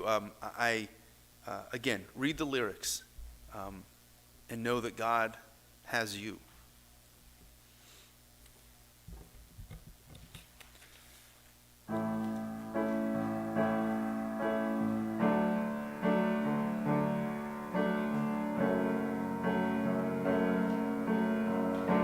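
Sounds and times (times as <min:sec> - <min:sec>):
piano playing sustained chords: 0:11.9 - 0:22.0.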